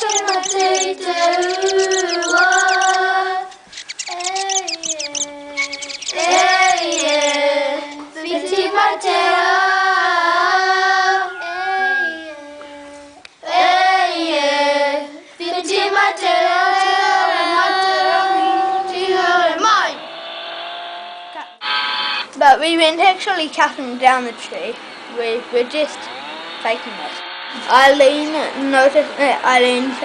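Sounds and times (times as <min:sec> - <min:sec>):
child singing: 0:00.0 - 0:20.0.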